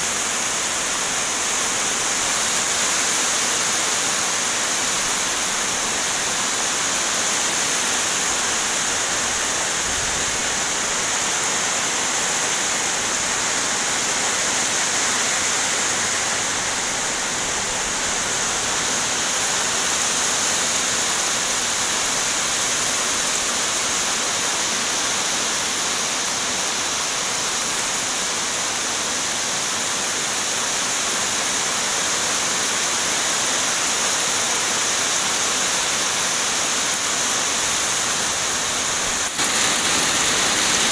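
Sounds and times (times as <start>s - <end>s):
heavy rain pouring: 0.0s - 25.7s, 31.2s - 40.9s.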